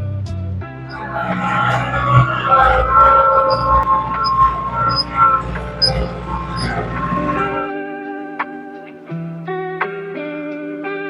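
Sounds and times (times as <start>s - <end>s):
low pulse: 0.9s - 7.8s.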